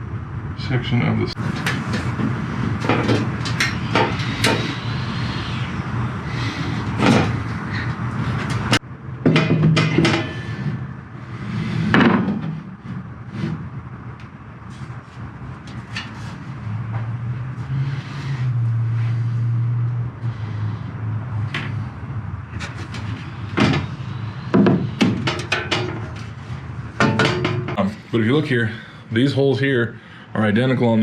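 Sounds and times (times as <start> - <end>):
metal parts knocking and clanking: 1.4 - 5.1, 6.8 - 10.8, 22.6 - 26.4, 27.0 - 27.8.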